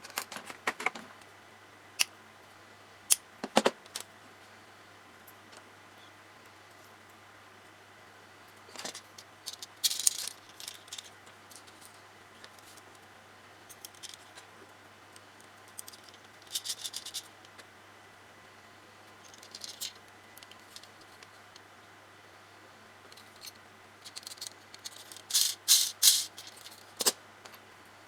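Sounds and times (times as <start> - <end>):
small plastic parts clicking and rattling: 0.0 - 1.2, 8.7 - 13.0, 13.7 - 14.5, 15.6 - 17.7, 19.2 - 21.7, 23.1 - 27.2
faint steady hum: 0.0 - 28.0.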